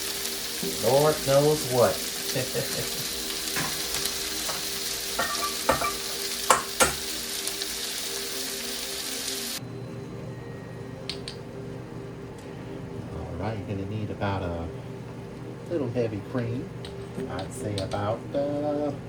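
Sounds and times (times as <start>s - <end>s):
sausage sizzling in a frying pan: 0.0s - 9.6s
utensil knocking on pan: 3.5s - 7.1s
steady low hum: 9.6s - 19.0s.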